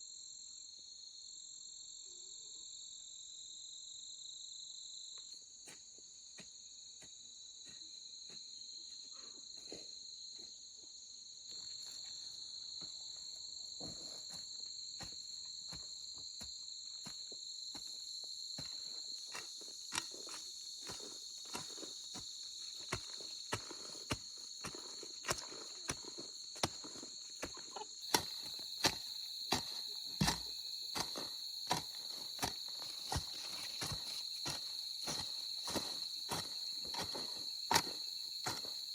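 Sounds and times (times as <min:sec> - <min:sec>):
insect chorus droning: 0:00.0 - 0:38.9
sharp knocks or steps: 0:26.6 - 0:38.7.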